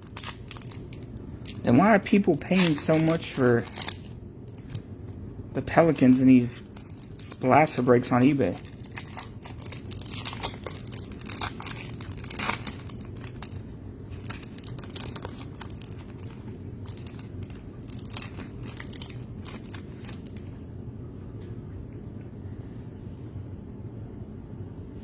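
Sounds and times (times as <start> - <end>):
plastic wrapper crinkling and tearing: 0.0 - 4.9, 5.7 - 20.6
cards being handled: 0.1 - 5.2, 5.8 - 20.5.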